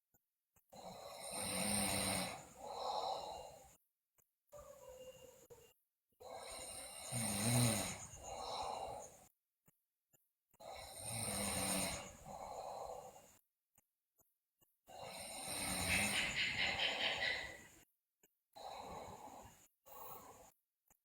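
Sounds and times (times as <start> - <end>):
girl snoring: 6.2 - 9.1, 10.6 - 13.2, 14.9 - 16.2, 18.6 - 20.6.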